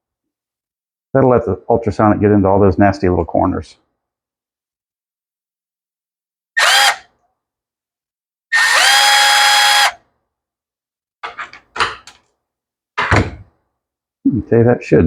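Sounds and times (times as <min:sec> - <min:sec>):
cordless drill whining: 0:06.6 - 0:07.1, 0:08.5 - 0:10.0.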